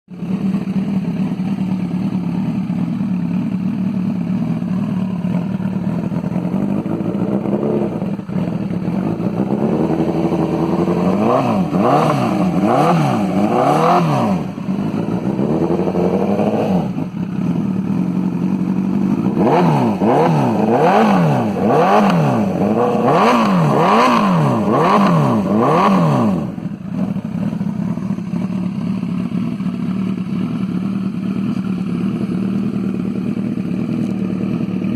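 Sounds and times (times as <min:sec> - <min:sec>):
motorcycle engine idling and revving: 0:00.1 - 0:34.9.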